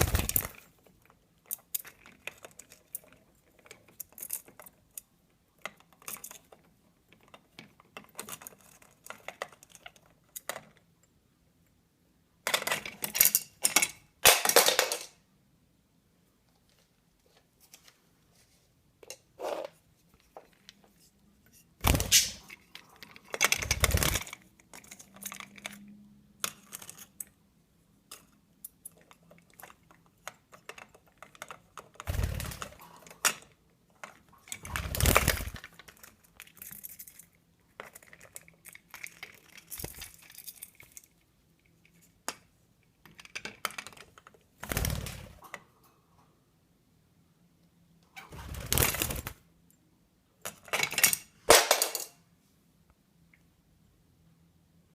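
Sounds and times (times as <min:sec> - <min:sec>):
parrot claws and beaks scratching: 0:00.0 - 0:10.7, 0:19.3 - 0:25.9, 0:28.3 - 0:42.3.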